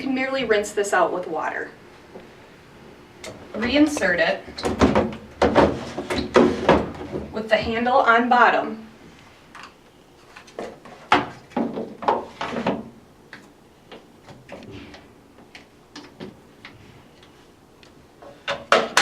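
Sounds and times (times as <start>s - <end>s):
plastic knocks and scrapes: 4.6s - 7.4s.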